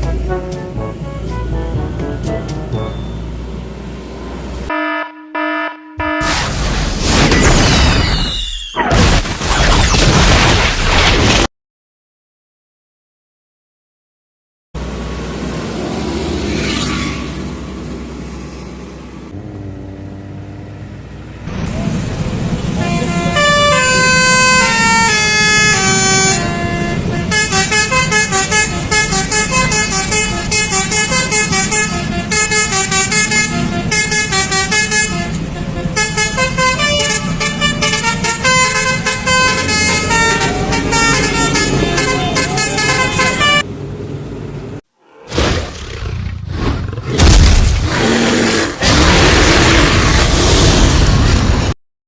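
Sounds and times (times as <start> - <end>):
multi-tone melodic horns: 0.0 - 3.6, 4.7 - 6.4, 22.7 - 43.7
heavy vehicle engines rumbling: 0.0 - 4.7, 14.8 - 44.8.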